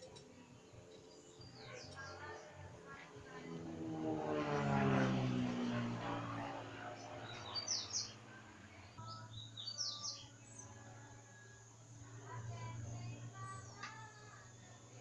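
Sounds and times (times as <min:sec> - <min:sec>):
birds chirping: 0:00.0 - 0:03.8, 0:04.4 - 0:15.0
small aircraft flying past: 0:00.0 - 0:15.0.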